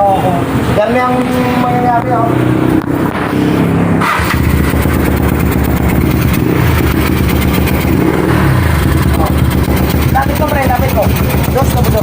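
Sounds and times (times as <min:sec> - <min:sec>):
scooter engine misfiring: 0:04.0 - 0:12.0.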